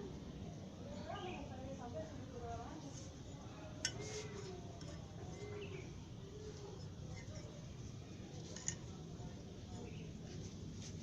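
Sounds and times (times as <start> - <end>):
steady background noise: 0.0 - 11.0
birds calling faintly: 0.4 - 1.9, 3.1 - 11.0.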